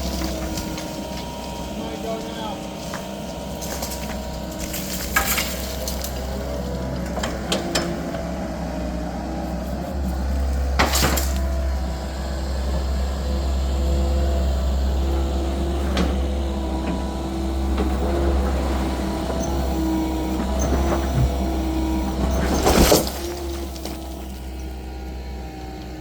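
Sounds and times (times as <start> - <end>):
excavator diesel engine drone: 0.0 - 26.0
metal bucket clanking on rocks: 3.6 - 6.3.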